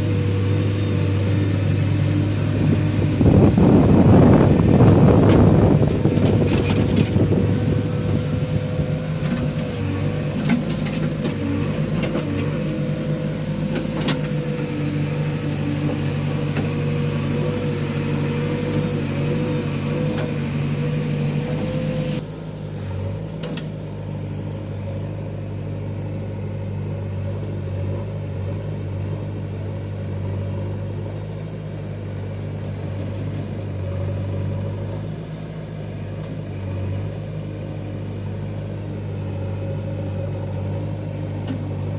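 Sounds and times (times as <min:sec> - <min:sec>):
steady whine: 0:00.0 - 0:22.8
diesel engines running: 0:00.0 - 0:41.9.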